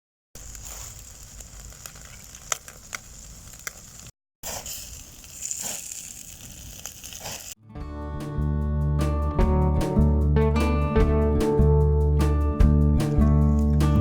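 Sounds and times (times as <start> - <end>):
chicken sizzling on a grill: 0.4 - 7.5.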